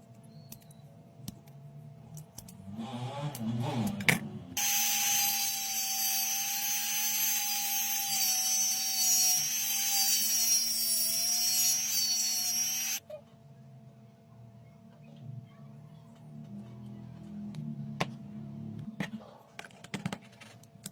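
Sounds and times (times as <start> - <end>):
small electric power tool running: 4.6 - 13.0.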